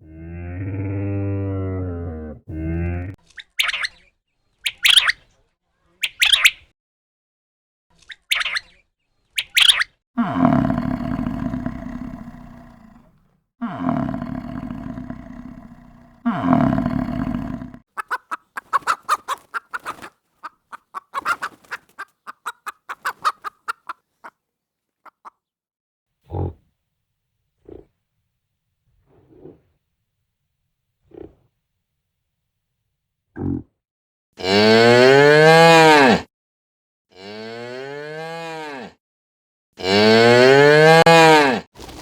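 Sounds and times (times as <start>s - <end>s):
high chirps: 9.4s - 9.8s
clucking: 17.9s - 24.4s, 25.0s - 25.4s.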